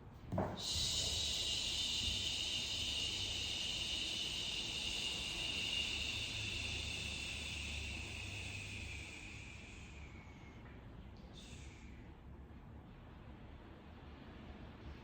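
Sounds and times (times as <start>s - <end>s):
person exhaling through teeth: 0.6s - 9.9s.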